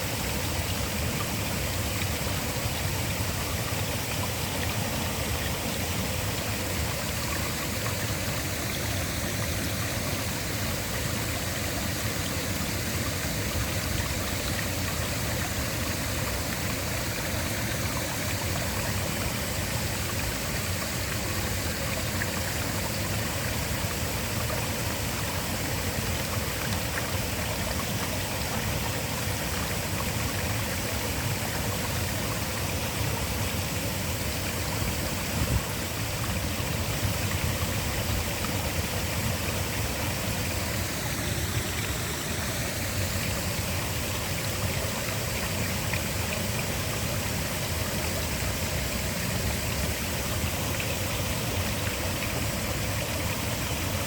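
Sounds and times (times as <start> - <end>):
waterfall rushing: 0.0 - 54.0.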